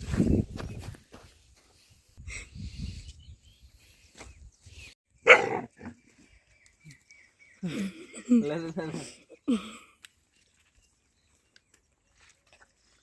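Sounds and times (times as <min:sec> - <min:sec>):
dog barking: 0:05.2 - 0:05.9.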